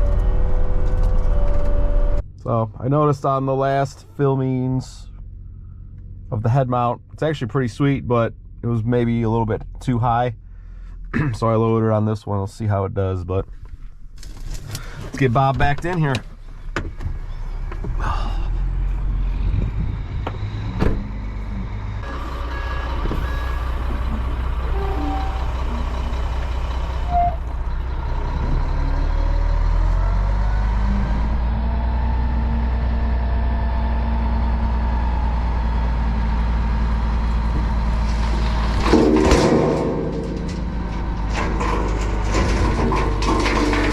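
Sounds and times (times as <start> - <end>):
truck reverse beeper: 0.0 - 2.3, 21.4 - 37.2
diesel engine running: 0.0 - 11.6, 13.3 - 43.9.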